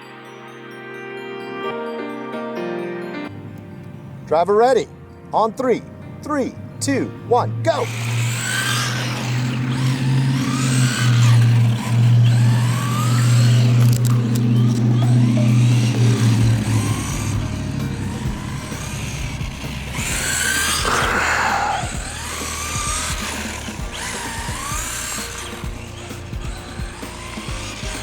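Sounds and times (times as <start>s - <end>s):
background music: 0.0s - 28.0s
electric toy car motor whining: 7.6s - 28.0s.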